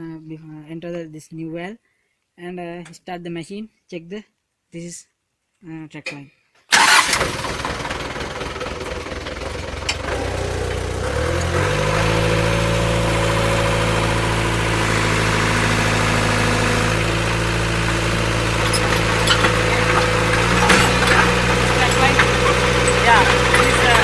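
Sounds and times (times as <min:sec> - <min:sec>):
excavator engine running: 0:06.7 - 0:24.0.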